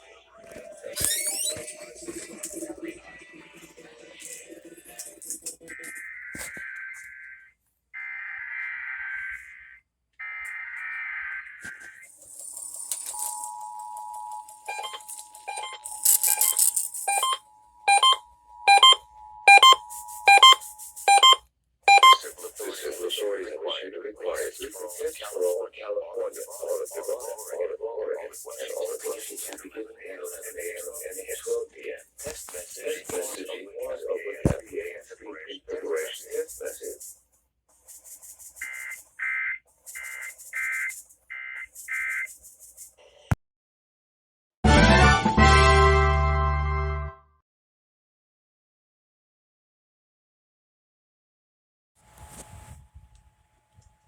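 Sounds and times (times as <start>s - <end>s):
two-tone attention signal: 13.1s - 22.2s
electronic beeping clusters: 14.7s - 22.2s, 38.6s - 42.3s.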